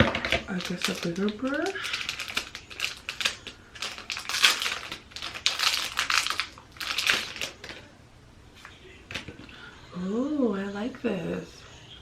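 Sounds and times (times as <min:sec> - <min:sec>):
plastic packaging crinkling: 0:00.0 - 0:07.9.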